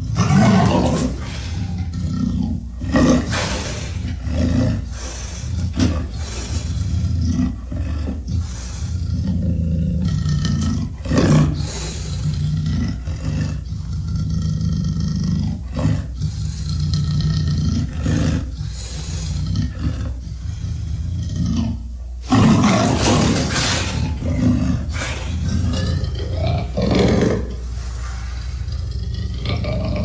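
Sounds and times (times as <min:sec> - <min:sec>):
creature roaring: 0:00.0 - 0:04.9, 0:22.3 - 0:27.6.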